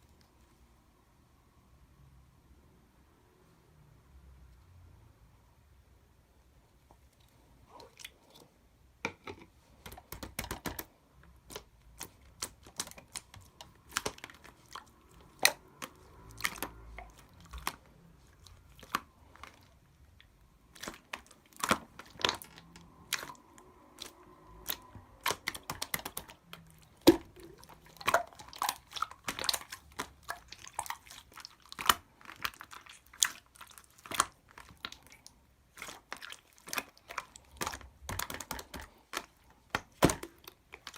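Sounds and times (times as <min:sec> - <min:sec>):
slime clicking and popping: 0:09.9 - 0:17.8, 0:20.7 - 0:40.9.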